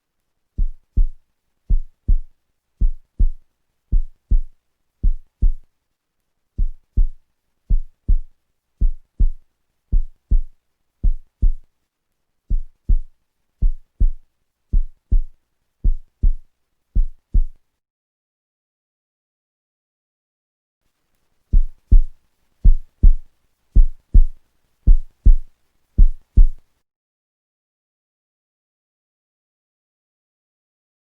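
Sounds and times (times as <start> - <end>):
low drum thumps like heartbeat: 0.6 - 5.6, 6.6 - 11.6, 12.5 - 16.4, 17.0 - 17.6, 21.5 - 23.2, 23.8 - 26.6.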